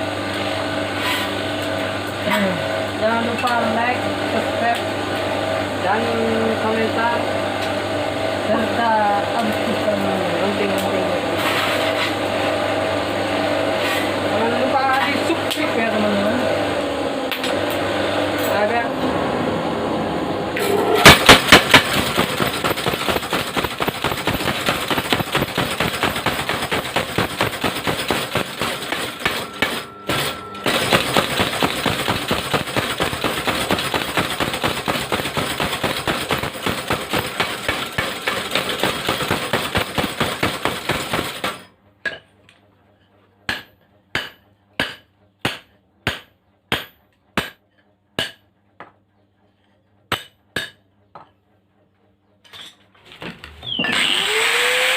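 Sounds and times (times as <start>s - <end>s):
forging hammer pounding metal: 20.6s - 42.3s, 43.5s - 47.6s, 48.2s - 48.4s, 50.1s - 50.8s.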